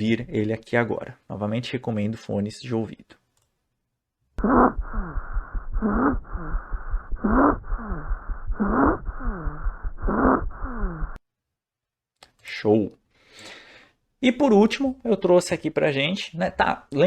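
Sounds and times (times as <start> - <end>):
harsh breathing through stethoscope: 13.1 - 14.0.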